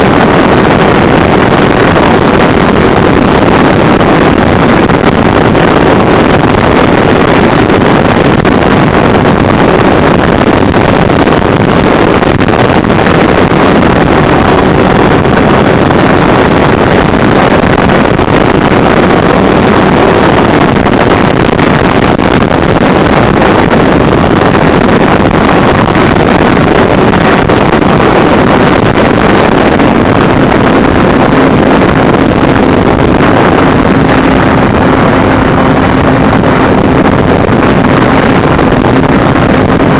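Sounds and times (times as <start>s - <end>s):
wind buffeting microphone: 0.0s - 39.9s
drone motors humming: 28.0s - 39.9s.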